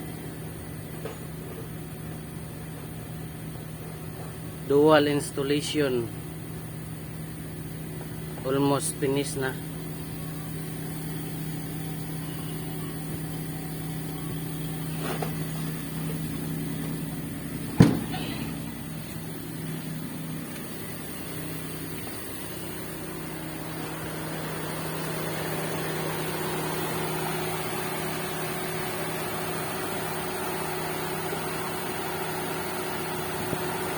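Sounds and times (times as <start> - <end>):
car engine idling: 0.0 - 33.9
sharp knock: 17.7 - 18.4.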